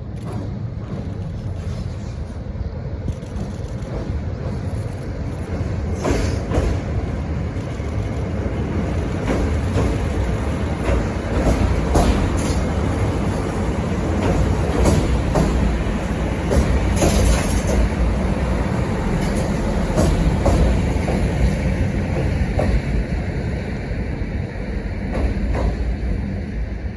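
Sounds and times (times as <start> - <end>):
diesel railcar rumbling: 0.0 - 26.9
wheels clicking on track: 3.0 - 22.9.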